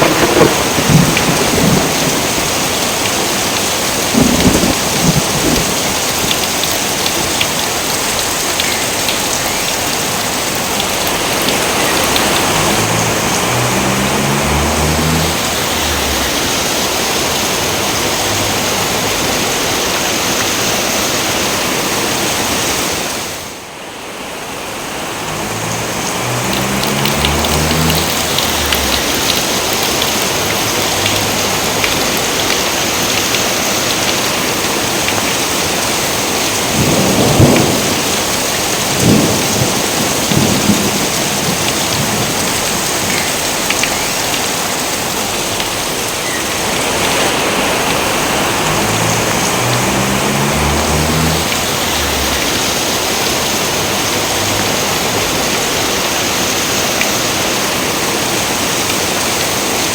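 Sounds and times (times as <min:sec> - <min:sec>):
sharp thunder cracks: 0:00.0 - 0:06.1, 0:36.7 - 0:42.6
low thunder rumbles: 0:00.0 - 0:19.6, 0:25.2 - 0:32.5, 0:36.5 - 0:44.3, 0:45.3 - 0:55.4
heavy rain falling: 0:00.0 - 0:59.9.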